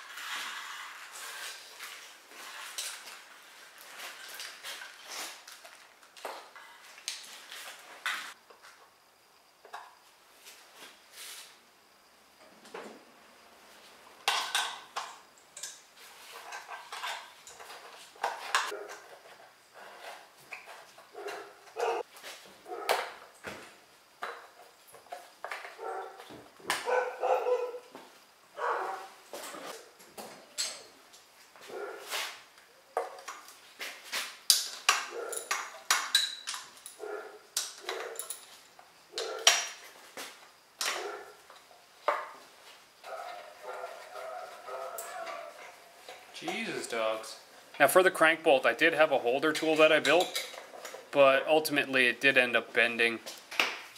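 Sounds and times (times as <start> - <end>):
dogs barking: 21.1 - 22.1, 22.7 - 23.0, 25.8 - 26.2, 26.8 - 27.9, 28.6 - 29.2, 31.7 - 32.1, 37.0 - 38.2, 39.1 - 39.5, 40.9 - 41.4, 43.0 - 45.8
metal tools clanking: 49.8 - 51.0.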